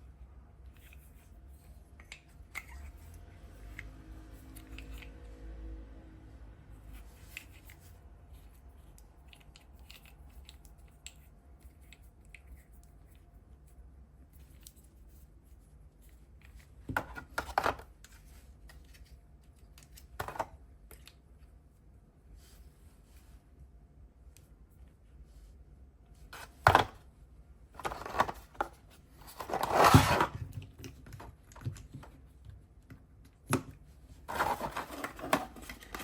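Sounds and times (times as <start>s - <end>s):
small clicks and rustles: 6.9s - 21.6s.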